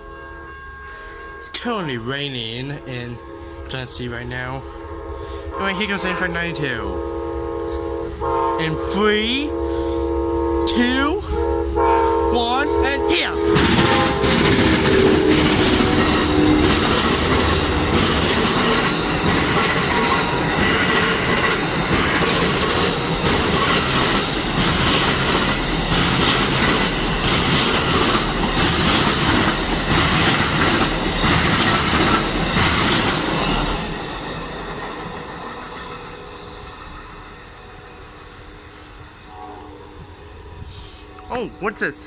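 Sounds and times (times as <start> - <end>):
train horn: 0.0 - 21.6, 37.6 - 42.0
train wheels rushing on rails: 12.5 - 42.0
wheels clacking on rail joints: 13.5 - 37.2.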